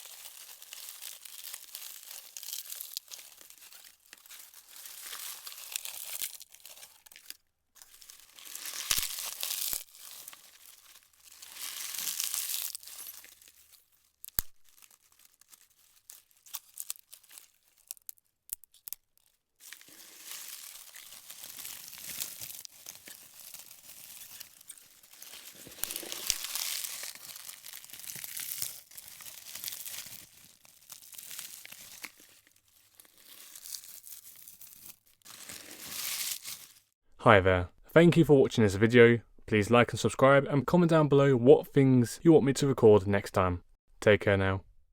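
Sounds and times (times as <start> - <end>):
dry leaves crunching by hand: 0.0 - 37.0.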